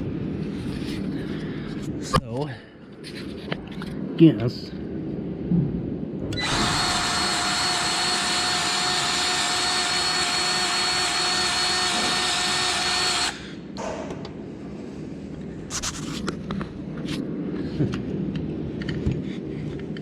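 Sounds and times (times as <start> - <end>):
grease gun motor whining: 6.3 - 13.4.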